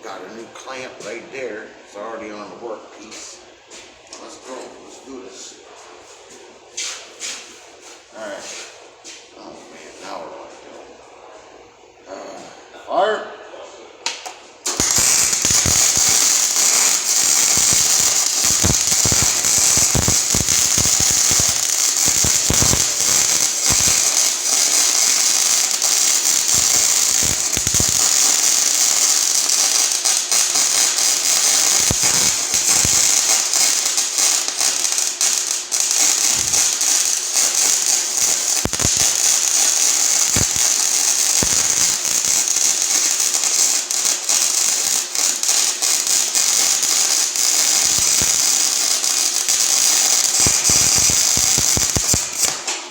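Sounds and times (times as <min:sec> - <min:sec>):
welding arc crackling: 0:14.6 - 0:52.8.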